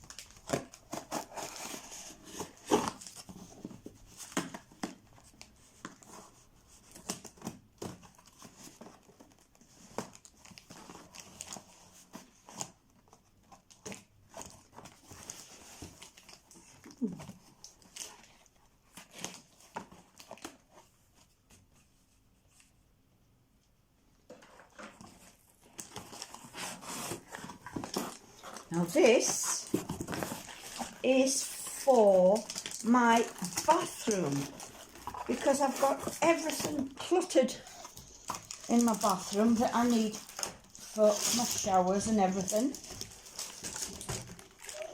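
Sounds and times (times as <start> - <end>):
plastic packaging tearing and crinkling: 0.0 - 3.5, 25.6 - 44.9.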